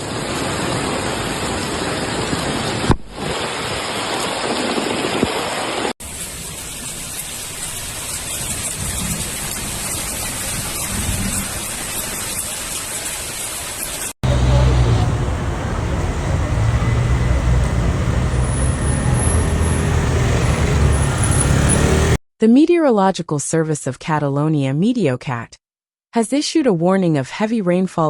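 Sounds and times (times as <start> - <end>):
rushing floodwater: 0.0 - 22.2.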